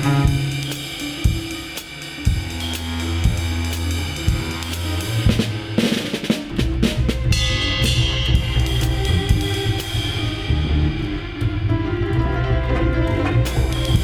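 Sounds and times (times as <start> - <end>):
drum kit hits: 0.0 - 10.0
sustained low bass notes: 0.0 - 14.0.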